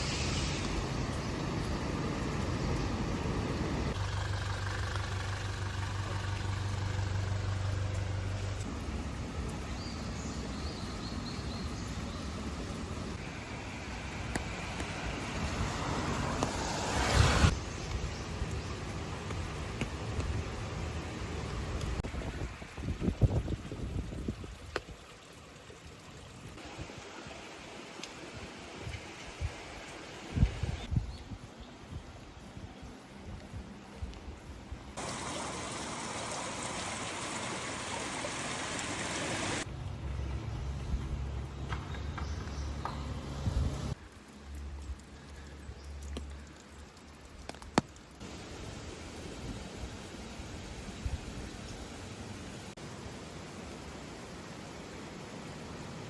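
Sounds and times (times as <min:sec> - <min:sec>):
rushing noise: 0:00.0 - 0:03.9, 0:35.0 - 0:39.7
hiss of water: 0:00.0 - 0:05.1, 0:07.8 - 0:30.9, 0:33.9 - 0:39.7, 0:43.3 - 0:56.0
wind rumble on microphone: 0:21.7 - 0:25.0, 0:30.3 - 0:35.0, 0:43.3 - 0:44.0
light ticks: 0:44.0 - 0:48.2.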